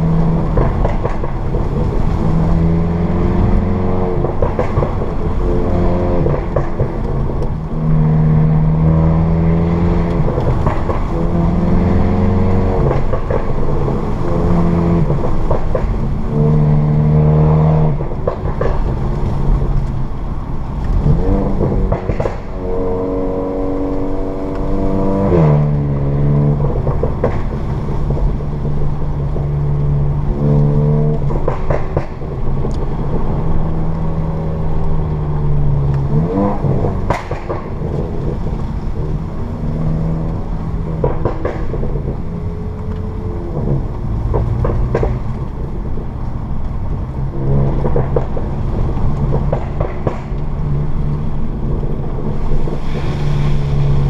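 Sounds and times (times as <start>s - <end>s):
car engine revving: 0.0s - 54.0s
exhaust pops: 0.0s - 54.0s.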